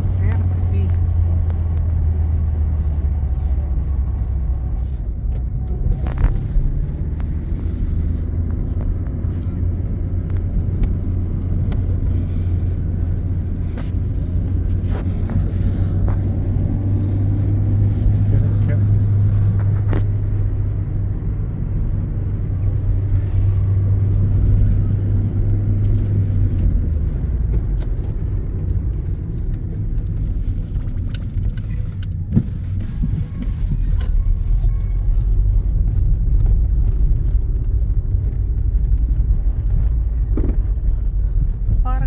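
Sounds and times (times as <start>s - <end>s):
car engine and road drone: 0.0s - 42.0s
small rattles and clicks: 21.9s - 42.0s.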